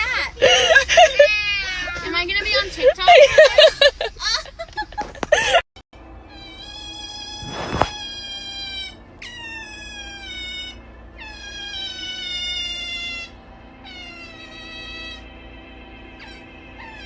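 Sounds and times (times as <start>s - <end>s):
cat yowling: 6.3s - 15.2s, 16.2s - 17.0s.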